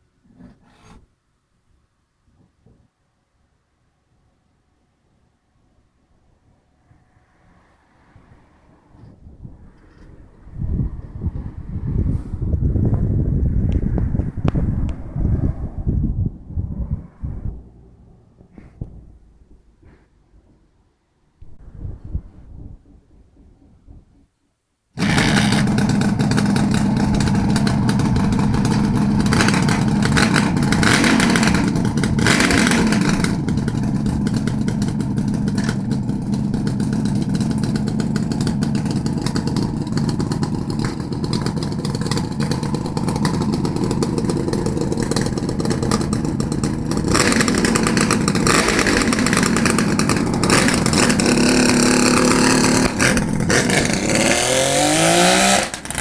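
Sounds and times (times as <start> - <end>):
two-stroke motorcycle revving: 25.0 - 56.0.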